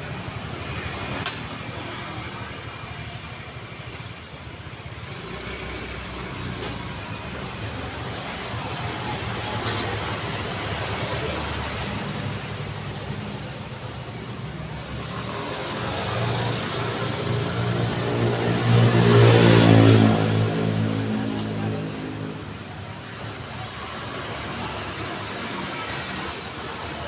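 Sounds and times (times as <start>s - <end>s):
tyre and traffic noise: 0.0s - 27.0s
vehicle passing close: 14.7s - 22.8s.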